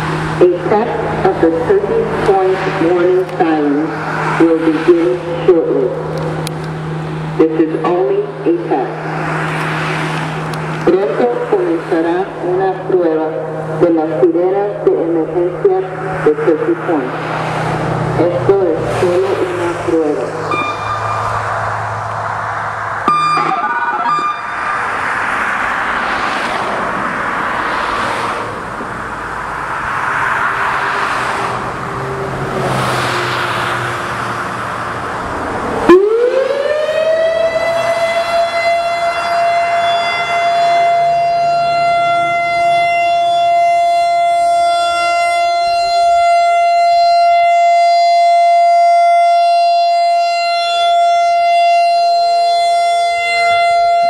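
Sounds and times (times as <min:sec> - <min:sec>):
rushing noise: 0:00.0 - 0:12.5, 0:15.9 - 0:36.0
warning siren steady tone: 0:00.0 - 0:26.5, 0:35.7 - 0:54.0.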